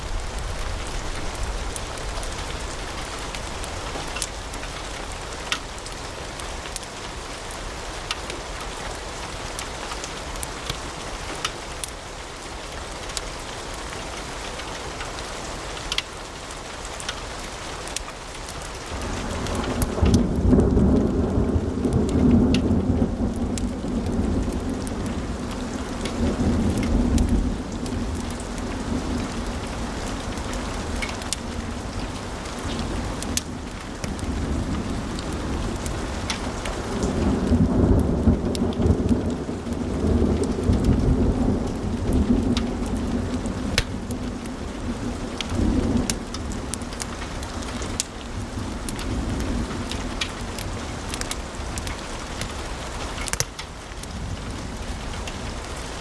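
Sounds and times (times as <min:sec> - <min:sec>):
burning logs crackling and popping: 0:00.0 - 0:56.0
low rumble of flames: 0:00.0 - 0:56.0.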